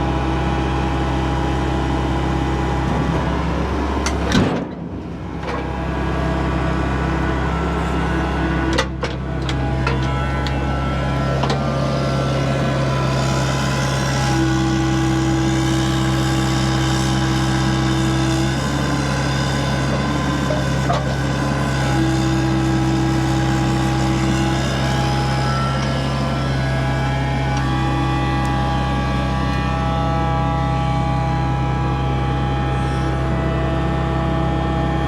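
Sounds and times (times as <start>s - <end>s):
diesel engine running: 0.0s - 35.0s.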